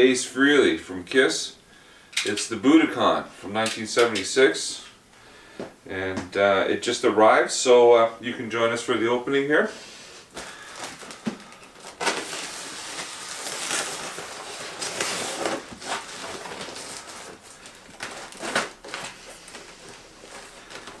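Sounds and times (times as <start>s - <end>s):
box and packing rustling: 10.3s - 21.0s.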